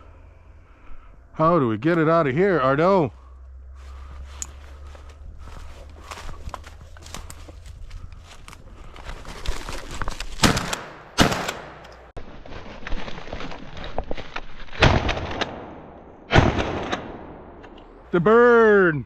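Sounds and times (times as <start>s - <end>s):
brush rustling: 2.9s - 11.0s
shotgun firing: 10.4s - 11.9s, 14.8s - 17.6s.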